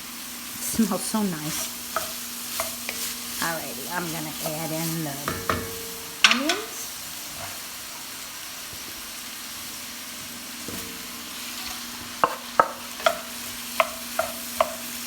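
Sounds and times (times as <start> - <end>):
onions sizzling in a pot: 0.0 - 15.0
spoon stirring and knocking pot: 1.9 - 3.2, 5.2 - 6.7, 12.1 - 15.0.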